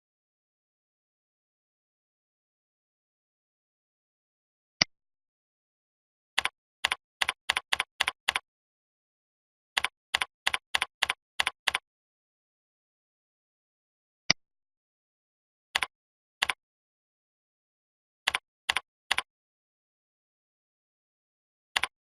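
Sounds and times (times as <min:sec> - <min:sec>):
computer keyboard typing: 0:06.4 - 0:08.4, 0:09.8 - 0:11.8, 0:15.8 - 0:16.6, 0:18.3 - 0:19.3, 0:21.8 - 0:22.0.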